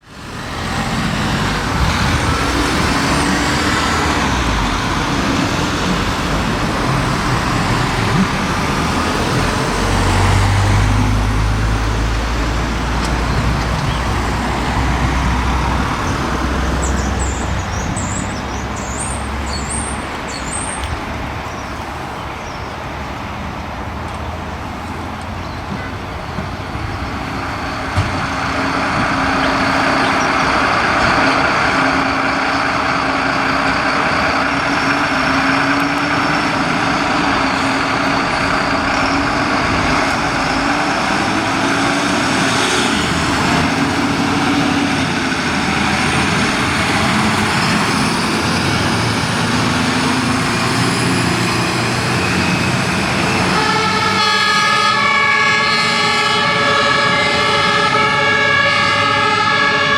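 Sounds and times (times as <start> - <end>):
sirens: 0.0 - 18.0, 24.6 - 59.9
truck engines and road noise: 0.0 - 59.9
loud multi-tone horn: 34.4 - 48.4, 49.5 - 59.9.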